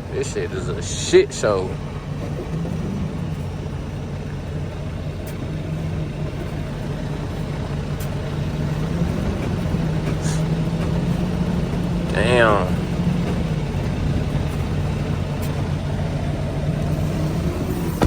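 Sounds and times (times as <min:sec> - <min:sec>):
diesel truck engine droning: 0:00.0 - 0:18.0.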